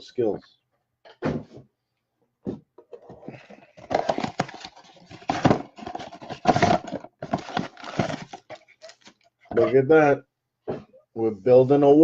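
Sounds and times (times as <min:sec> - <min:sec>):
packs rustling: 0:03.0 - 0:09.3.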